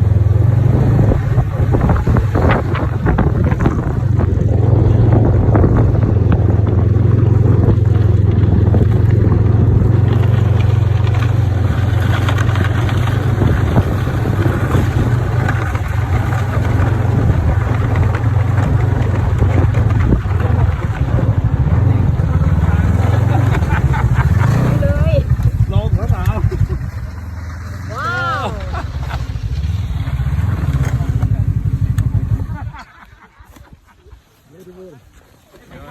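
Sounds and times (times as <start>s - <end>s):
snowmobile engine droning: 0.0s - 35.9s.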